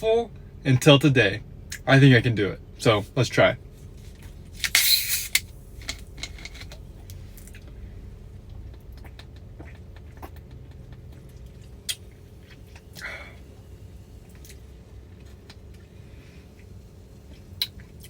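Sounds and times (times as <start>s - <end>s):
gas hissing from bottle opening: 4.6s - 6.7s.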